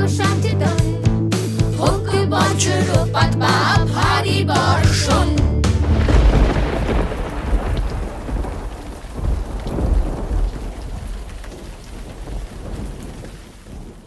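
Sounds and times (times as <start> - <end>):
heavy rain: 5.6 - 14.0
rolling thunder: 5.6 - 14.0.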